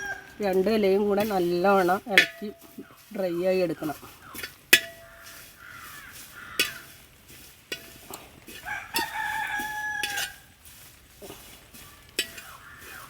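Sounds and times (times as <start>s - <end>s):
rooster crowing: 0.0s - 1.0s, 8.5s - 10.6s
clinks of stirring in metal pot: 0.0s - 13.0s.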